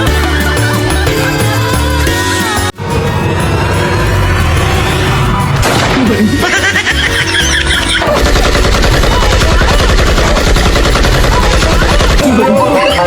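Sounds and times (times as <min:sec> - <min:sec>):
music with fast rattling beat: 0:00.0 - 0:13.0
pulsing bass: 0:01.0 - 0:13.0.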